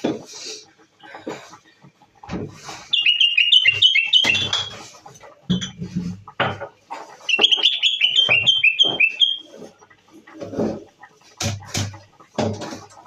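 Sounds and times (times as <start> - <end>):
bird chirping: 2.9 - 4.8, 7.2 - 9.6.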